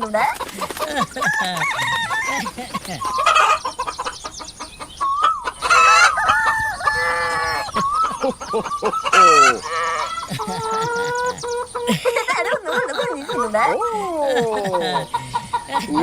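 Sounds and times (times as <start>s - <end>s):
chickens clucking: 0.0s - 16.0s
rooster crowing: 1.2s - 3.6s, 5.0s - 13.8s.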